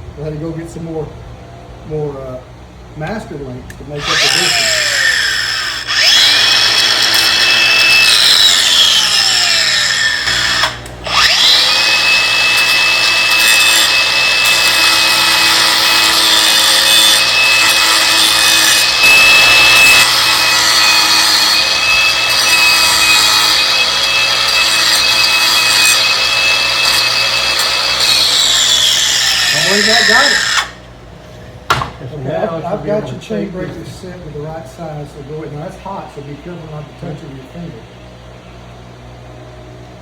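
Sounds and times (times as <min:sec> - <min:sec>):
power grinder grinding metal: 0:04.0 - 0:30.9.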